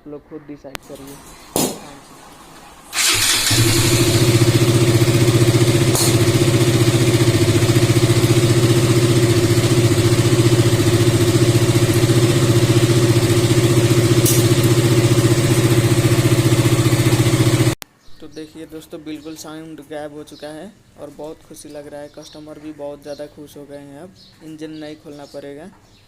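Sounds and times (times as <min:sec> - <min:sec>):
motorcycle engine idling: 0:02.9 - 0:17.8.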